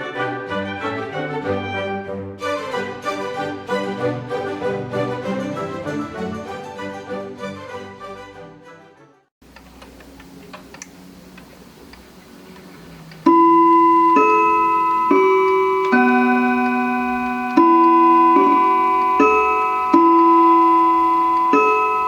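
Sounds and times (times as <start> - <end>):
clock chime melody: 13.3 - 22.0.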